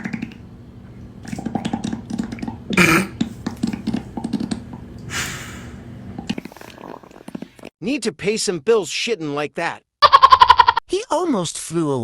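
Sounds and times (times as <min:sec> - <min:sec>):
person farting: 0:01.4 - 0:04.6.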